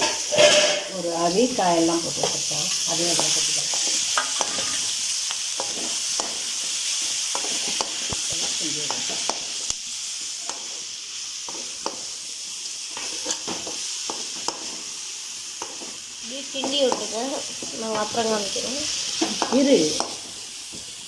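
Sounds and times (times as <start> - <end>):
spoon scraping a pan: 0.0 - 9.8, 12.9 - 15.0
vegetables sizzling in a pan: 0.0 - 21.0.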